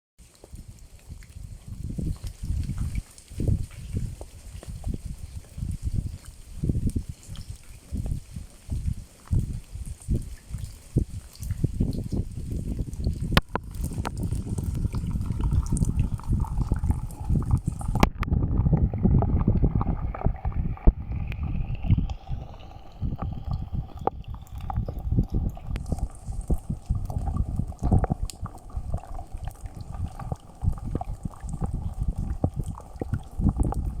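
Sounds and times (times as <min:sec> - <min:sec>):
rain pattering: 0:00.2 - 0:34.0
low rumbling undertone: 0:13.4 - 0:28.3
faint rising whistle tone: 0:21.0 - 0:24.9.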